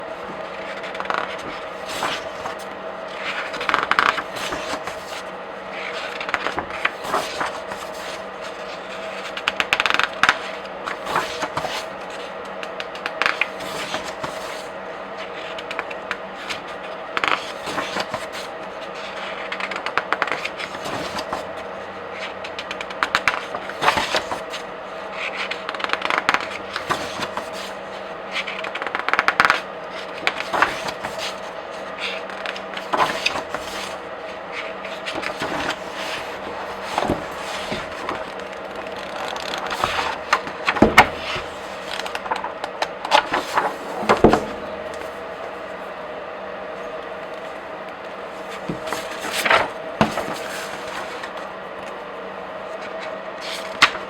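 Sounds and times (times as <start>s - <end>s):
pages being turned: 0.5s - 5.2s, 5.8s - 9.5s, 29.4s - 46.0s, 48.3s - 51.4s
pages riffling: 30.2s - 45.8s.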